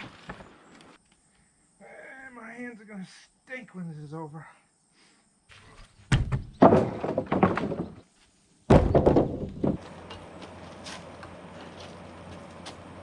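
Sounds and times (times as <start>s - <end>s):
wooden boards thunking and clattering: 6.1s - 8.1s, 8.7s - 10.2s.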